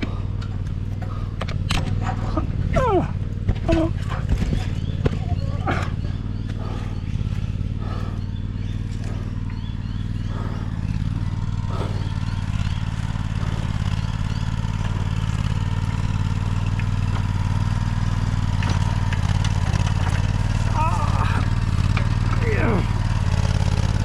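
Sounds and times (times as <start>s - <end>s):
engine idling: 0.0s - 24.0s.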